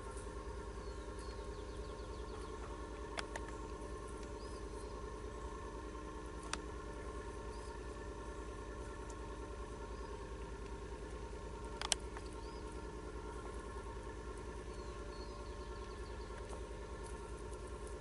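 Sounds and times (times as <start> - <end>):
faint bird chirps: 0.0 - 18.0
steady low hum: 0.0 - 18.0
sharp clicks: 3.0 - 4.4, 6.4 - 6.7, 11.6 - 12.7.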